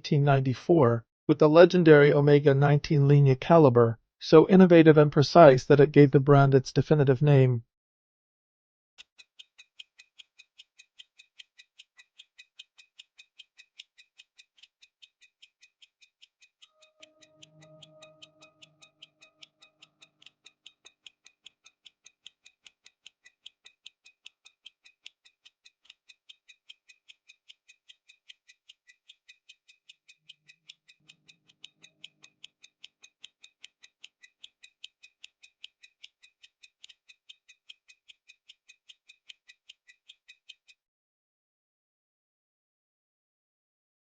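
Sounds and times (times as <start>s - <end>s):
pocket watch ticking: 9.0s - 40.8s
soft music chords: 16.7s - 19.5s.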